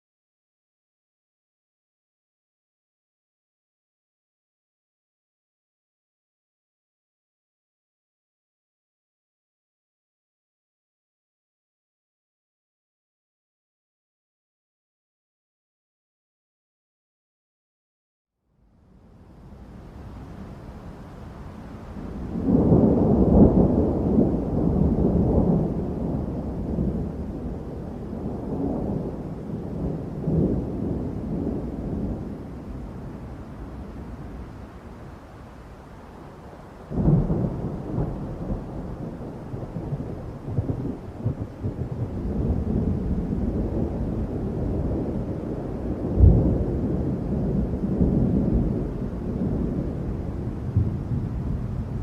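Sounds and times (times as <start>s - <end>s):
rain: 18.5s - 52.0s
thunder rumbling: 19.2s - 52.0s.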